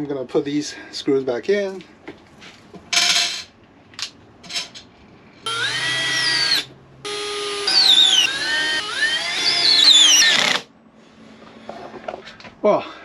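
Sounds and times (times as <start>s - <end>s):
cordless drill motor whine: 5.5s - 10.6s.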